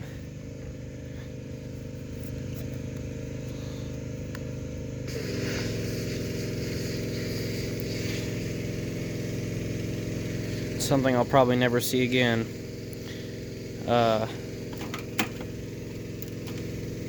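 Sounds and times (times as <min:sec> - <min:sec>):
motor humming: 0:00.0 - 0:17.0
hiss: 0:05.0 - 0:11.2, 0:12.5 - 0:17.0.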